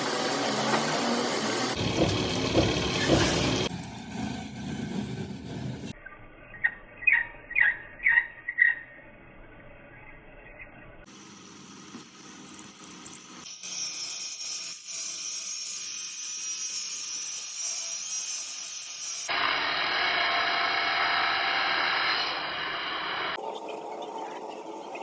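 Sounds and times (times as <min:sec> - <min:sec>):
metalworking machinery grinding: 0:00.0 - 0:06.0.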